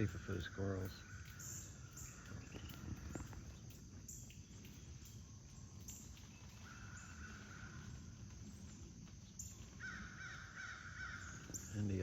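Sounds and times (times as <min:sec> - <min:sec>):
insects chirping: 0:00.0 - 0:12.0
faint clicks: 0:00.7 - 0:09.7.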